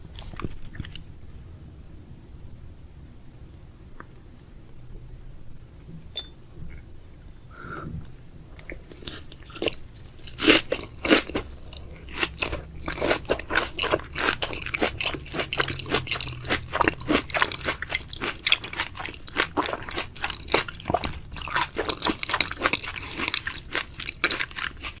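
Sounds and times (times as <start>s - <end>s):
biting and chewing: 8.6s - 25.0s.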